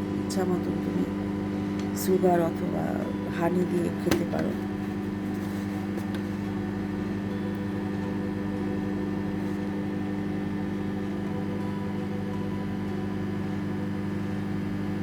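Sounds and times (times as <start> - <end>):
microwave oven humming: 0.0 - 15.0.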